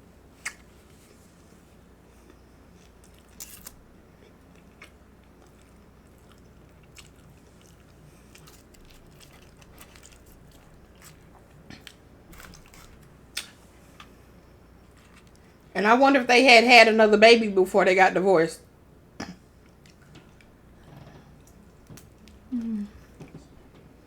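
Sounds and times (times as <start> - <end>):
person chewing: 2.1 - 15.6
crisp crunches: 2.8 - 3.8, 4.6 - 13.6.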